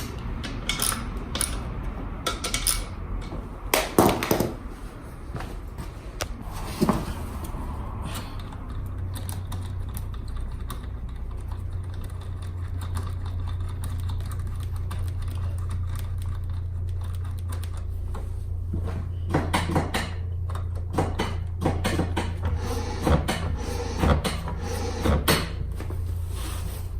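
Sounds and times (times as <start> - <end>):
low mechanical hum: 0.0 - 26.9.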